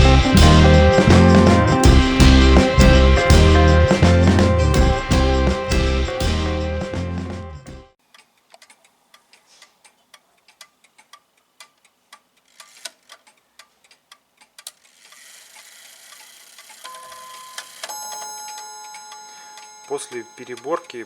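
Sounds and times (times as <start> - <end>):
background music: 0.0 - 8.0
pendulum clock ticking: 16.1 - 21.0.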